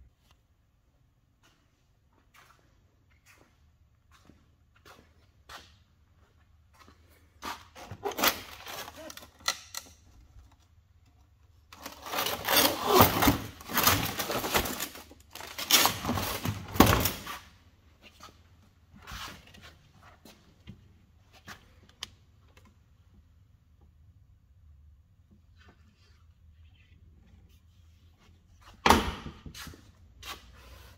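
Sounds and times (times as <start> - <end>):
tools clattering and scraping: 7.6 - 10.7, 11.7 - 17.6.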